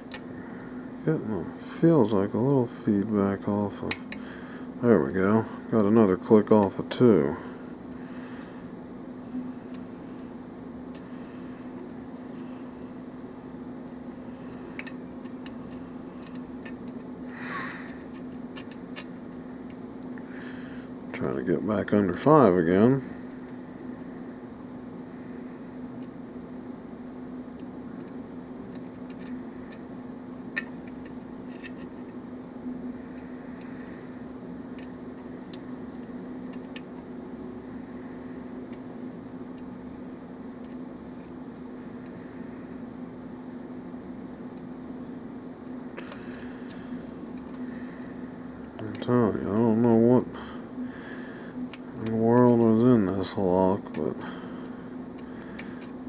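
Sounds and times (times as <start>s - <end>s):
steady low hum: 0.0s - 56.0s
lock pick scraping: 30.6s - 32.2s.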